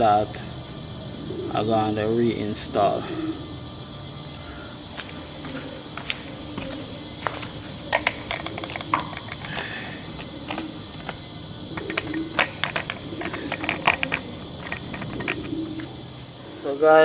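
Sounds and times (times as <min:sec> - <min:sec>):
crickets chirring: 0:00.0 - 0:17.0
tools clicking and knocking: 0:07.9 - 0:11.2, 0:11.8 - 0:15.9.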